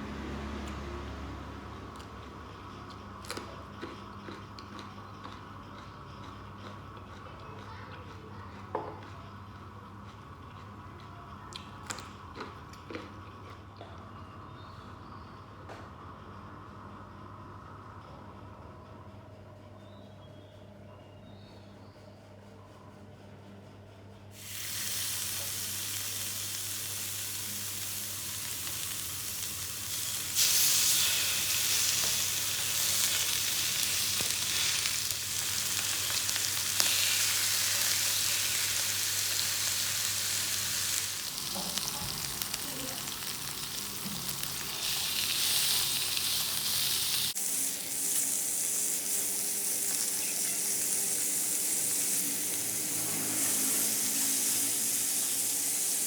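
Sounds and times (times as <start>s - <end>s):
meat and vegetables sizzling: 24.4s - 56.0s.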